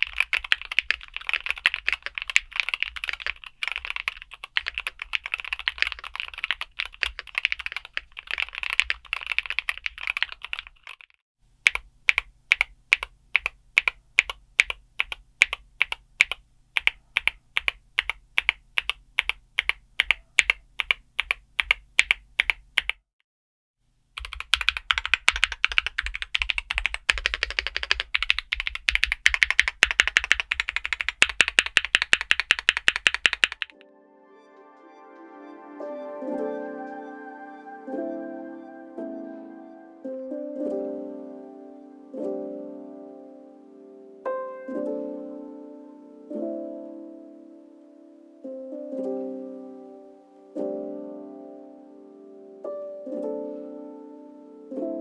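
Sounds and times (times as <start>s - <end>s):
typing on a keyboard: 0.0s - 23.0s, 24.2s - 33.8s.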